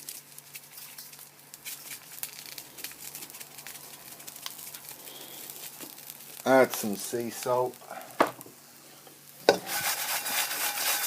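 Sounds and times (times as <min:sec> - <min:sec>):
salt container crinkling: 0:00.0 - 0:07.7
peppers crackling in a hot wok: 0:00.0 - 0:11.0.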